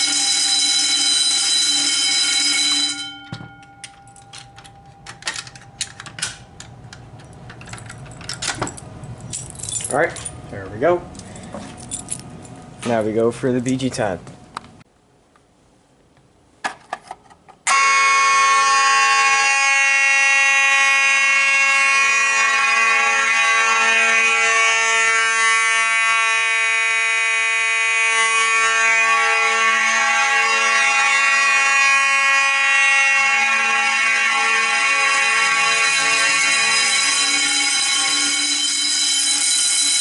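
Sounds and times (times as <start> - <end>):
fire alarm sounding: 0.0 - 6.6, 17.7 - 40.0.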